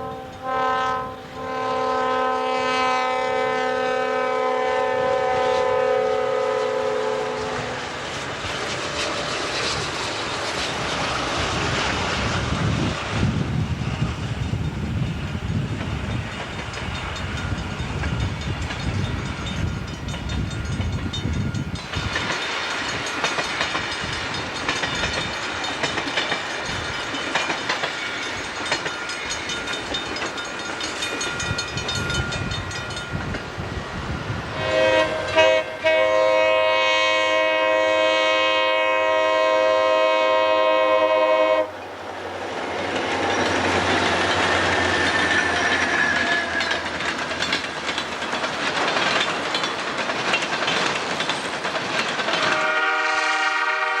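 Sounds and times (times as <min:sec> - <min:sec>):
locomotive air horn: 0:00.0 - 0:08.0, 0:34.6 - 0:41.8, 0:52.4 - 0:54.0
train passing on rails: 0:00.0 - 0:54.0.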